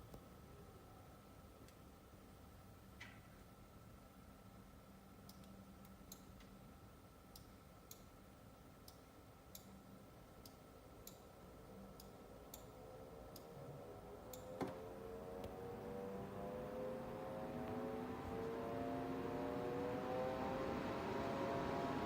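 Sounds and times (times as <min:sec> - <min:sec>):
low steady hum: 0:00.0 - 0:22.0
cooler fan whine: 0:11.8 - 0:22.0.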